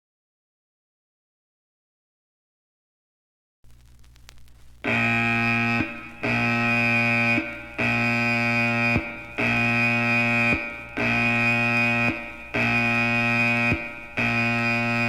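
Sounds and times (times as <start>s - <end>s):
harsh buzzing alarm blasts: 4.8s - 15.0s.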